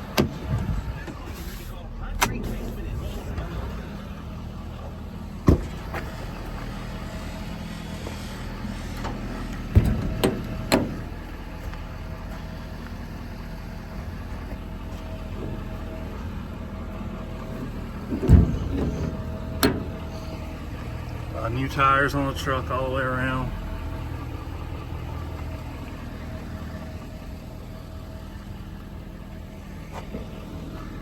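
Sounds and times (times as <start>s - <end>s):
sharp engine knocks: 0.0s - 1.2s, 5.4s - 6.6s, 9.0s - 11.2s, 17.4s - 21.1s
diesel engine idling: 0.0s - 31.0s.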